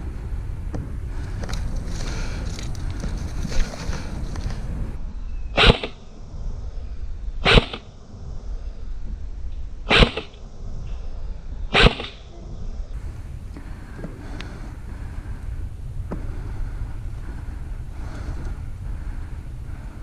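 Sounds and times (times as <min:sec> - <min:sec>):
wind noise on microphone: 0:00.0 - 0:20.0
airsoft gun shots: 0:05.6 - 0:06.0, 0:07.4 - 0:07.9, 0:09.9 - 0:10.4, 0:11.7 - 0:12.3.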